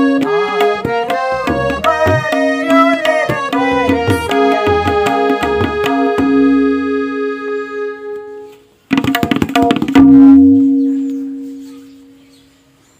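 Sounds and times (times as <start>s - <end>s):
tabla strokes: 0.0s - 7.1s, 8.9s - 12.4s
harmonium chord: 0.0s - 8.7s.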